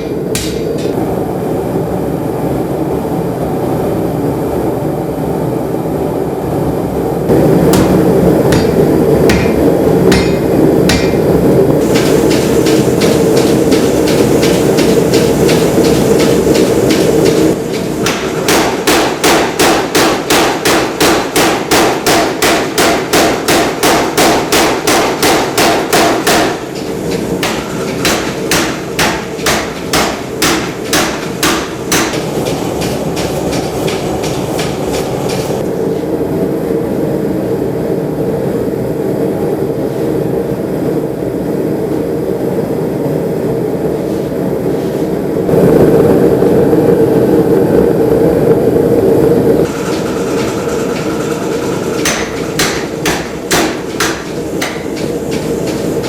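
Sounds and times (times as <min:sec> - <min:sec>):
steady rushing noise: 0:00.0 - 0:56.0
rapid hammer blows on metal: 0:07.4 - 0:35.6, 0:49.6 - 0:56.0.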